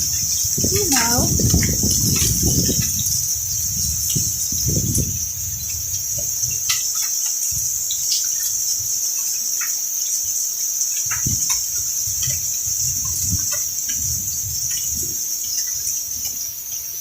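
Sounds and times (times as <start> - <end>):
hailstones ticking on hard surfaces: 0.0 - 17.0
hiss of falling hail and rain: 0.0 - 17.0.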